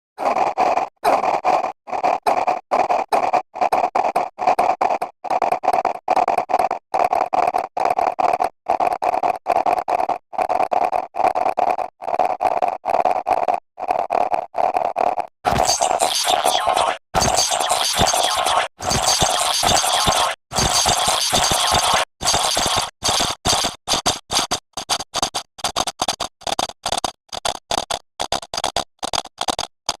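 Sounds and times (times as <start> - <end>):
stuttering boo sound effect: 15.5 - 24.6.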